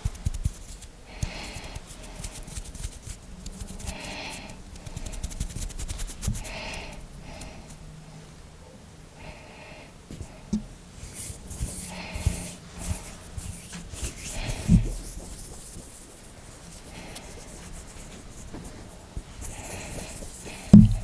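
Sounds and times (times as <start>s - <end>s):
hands rubbing together: 0.0s - 7.6s, 11.0s - 21.0s
soft low thumps: 20.7s - 21.0s.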